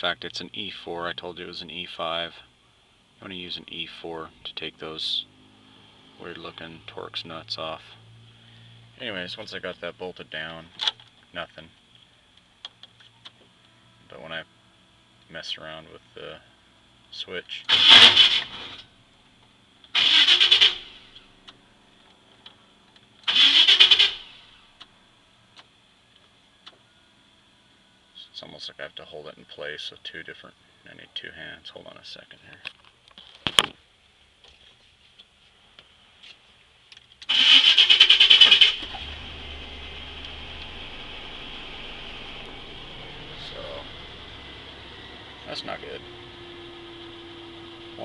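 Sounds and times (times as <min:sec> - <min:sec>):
starter cranking engine: 0:17.7 - 0:18.6, 0:19.9 - 0:21.0, 0:23.2 - 0:24.4, 0:37.2 - 0:40.8
car engine idling: 0:17.7 - 0:26.9, 0:37.3 - 0:48.0.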